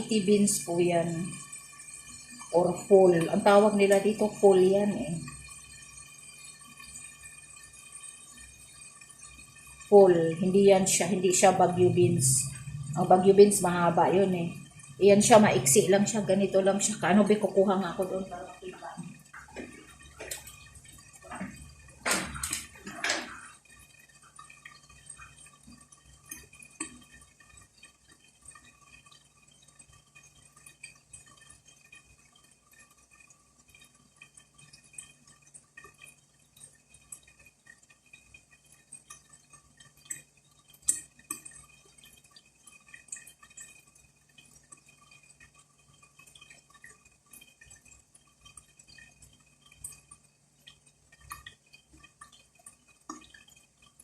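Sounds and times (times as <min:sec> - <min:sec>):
small drips: 0:00.0 - 0:54.0
steady hum: 0:09.6 - 0:25.9.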